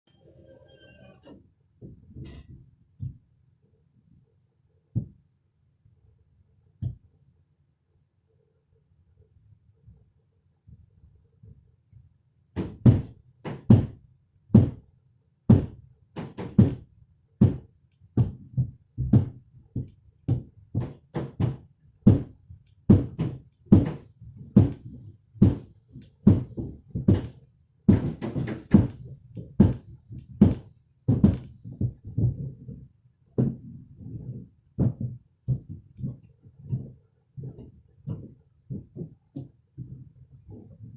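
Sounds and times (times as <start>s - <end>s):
knocks and thumps on roof: 12.6s - 14.0s, 14.6s - 14.8s, 15.5s - 16.8s, 17.4s - 40.0s.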